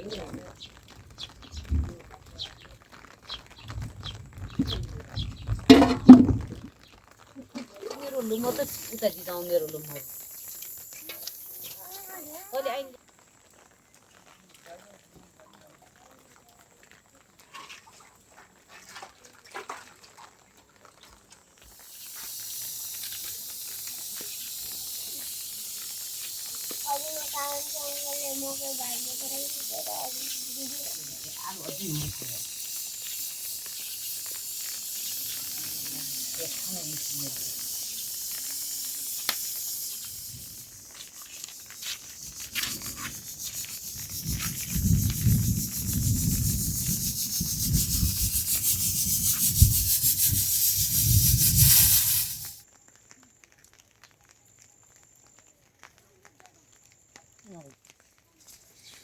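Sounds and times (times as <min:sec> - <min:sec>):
rough rubbing and scraping: 0:03.5 - 0:06.7, 0:26.0 - 0:52.6
loud steady hiss: 0:05.6 - 0:06.6, 0:07.7 - 0:13.2, 0:21.6 - 0:52.7.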